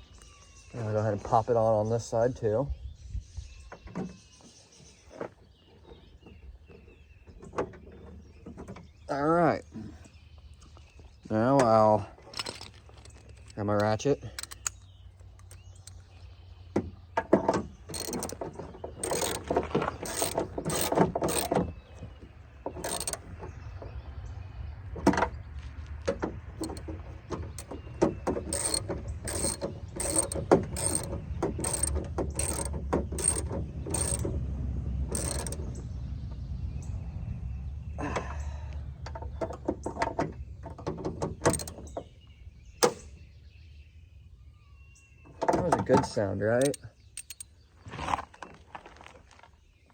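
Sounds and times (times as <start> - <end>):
hand ratchet clicking: 12.4 - 14.8, 17.9 - 18.4, 19.0 - 21.6, 22.8 - 23.3, 26.6 - 26.9, 27.6 - 34.3, 35.1 - 35.6, 41.5 - 41.8, 46.6 - 47.4.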